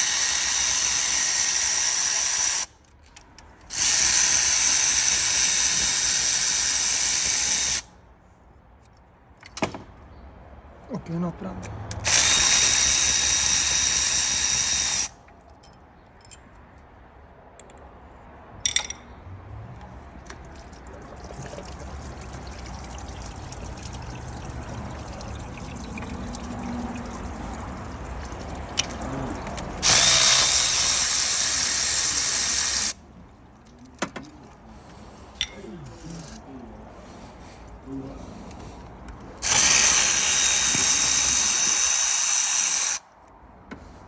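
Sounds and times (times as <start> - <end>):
handheld power drill running: 0.0 - 2.7, 3.7 - 7.9, 12.0 - 15.2, 29.8 - 33.0, 39.4 - 43.0.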